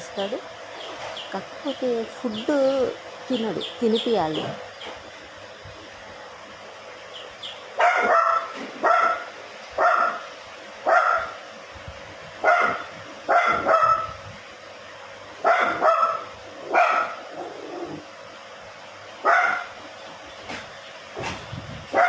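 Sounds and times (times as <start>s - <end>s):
puppy barking: 7.8s - 11.4s, 12.4s - 14.2s, 15.4s - 18.0s, 19.2s - 19.8s.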